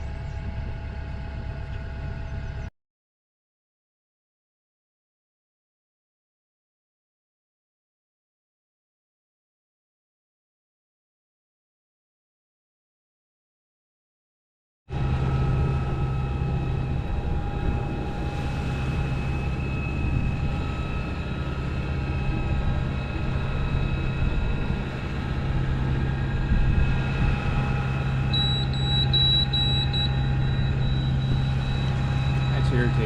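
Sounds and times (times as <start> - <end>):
diesel engine droning: 0.0 - 2.7, 14.9 - 33.0
high electronic beeps: 28.3 - 33.0.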